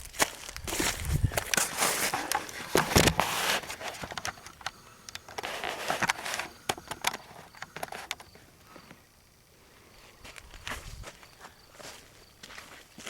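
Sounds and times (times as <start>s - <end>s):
footsteps crunching on dry ground: 0.0s - 9.0s, 9.8s - 13.0s
crackling clicks: 1.4s - 9.0s.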